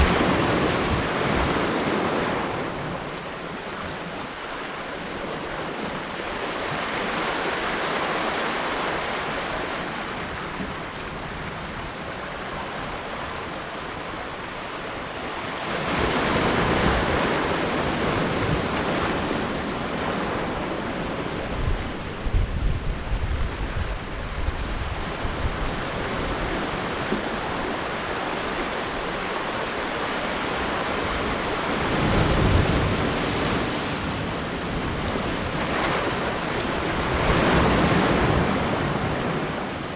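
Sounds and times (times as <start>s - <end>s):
wind buffeting microphone: 0.0s - 4.4s, 15.8s - 39.9s
ocean surf washing in: 0.0s - 39.9s.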